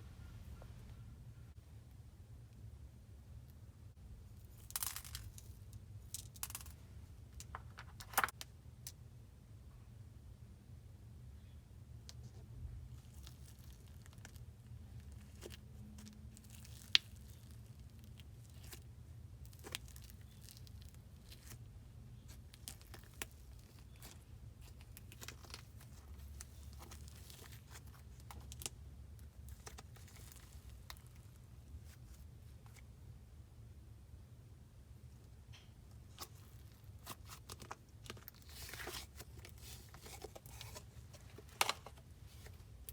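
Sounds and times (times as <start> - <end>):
low steady hum: 0.0 - 42.9
crinkling and rustling: 12.2 - 32.9, 35.5 - 42.9.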